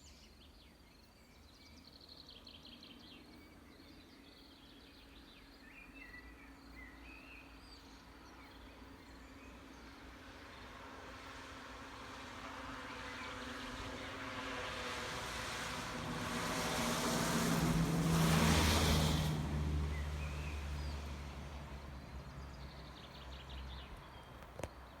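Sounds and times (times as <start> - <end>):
vehicle passing by: 9.8 - 24.2.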